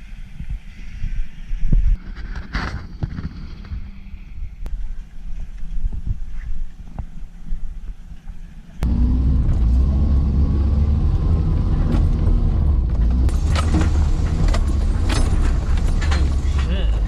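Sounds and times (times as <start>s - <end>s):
vehicle engine low rumble: 7.0s - 17.0s
knocks and rattles: 11.3s - 17.0s.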